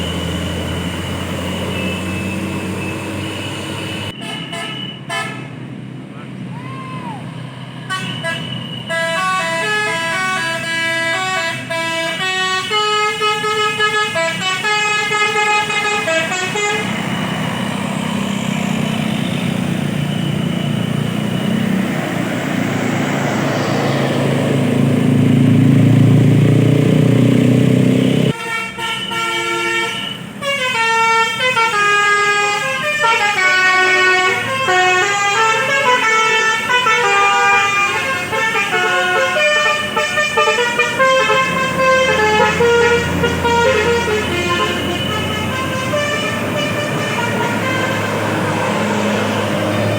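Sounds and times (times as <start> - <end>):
musical bus horn tunes: 0.0 - 5.5, 7.9 - 17.2, 28.2 - 49.9
bus engine: 0.0 - 49.9
road noise: 0.0 - 49.9.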